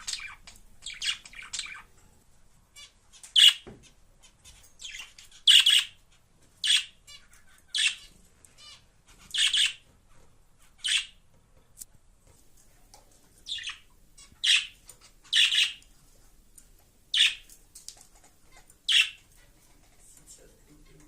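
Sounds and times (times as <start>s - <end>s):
budgerigar chirping: 0.0s - 1.9s, 2.8s - 9.8s, 10.8s - 11.2s, 13.4s - 15.9s, 17.1s - 17.5s, 18.5s - 19.3s
budgerigar warbling chatter: 13.5s - 15.8s, 18.9s - 19.2s.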